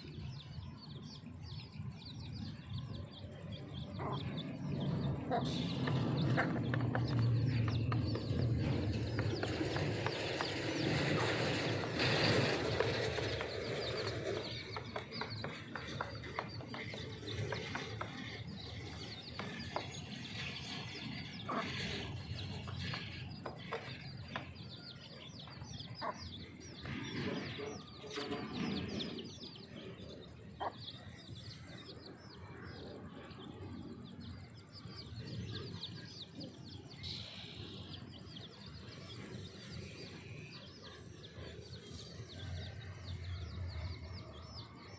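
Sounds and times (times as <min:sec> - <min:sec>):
chicks peeping: 0:00.2 - 0:37.0.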